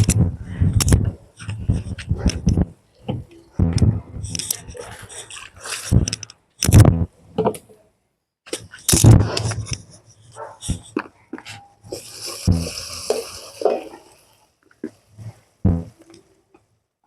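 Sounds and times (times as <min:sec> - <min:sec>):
light clicks and clatter: 0:00.0 - 0:07.8
dog barking: 0:10.3 - 0:10.8.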